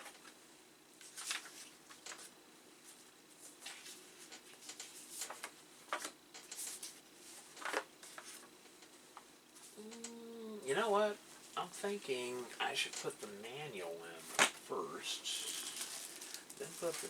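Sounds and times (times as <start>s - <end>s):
paper and cardboard rustling: 1.0s - 8.5s, 15.3s - 17.0s.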